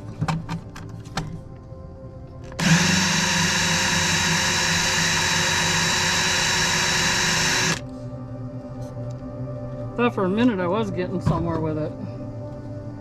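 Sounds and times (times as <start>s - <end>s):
power drill running: 2.6s - 7.8s.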